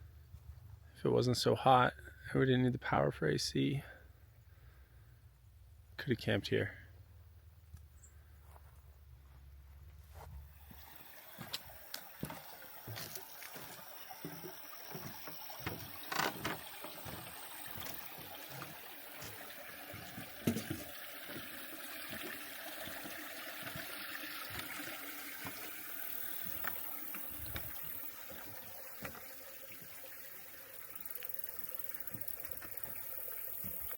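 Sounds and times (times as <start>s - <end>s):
footsteps on hiking trail: 7.8s - 29.3s.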